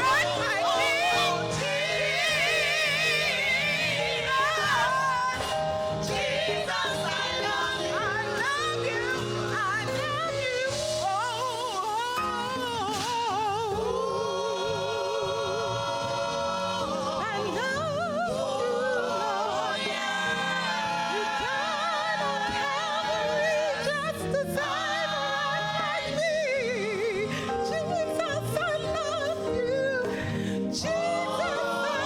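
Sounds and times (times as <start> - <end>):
gospel singing: 0.0 - 32.0
musical accompaniment: 0.0 - 32.0.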